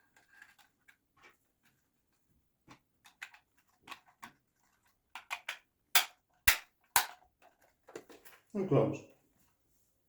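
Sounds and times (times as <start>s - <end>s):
plastic clicks and taps: 5.1s - 7.2s.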